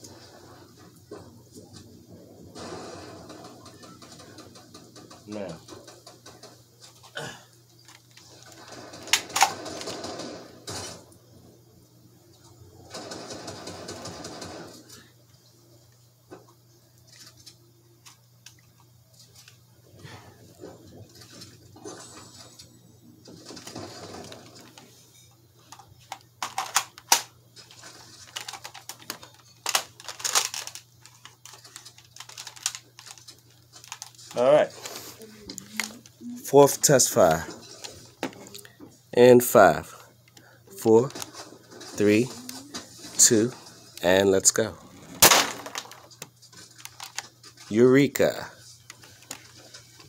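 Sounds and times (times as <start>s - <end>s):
toy blaster clicks and knocks: 25.7s - 27.3s, 28.2s - 34.4s, 45.2s - 47.3s.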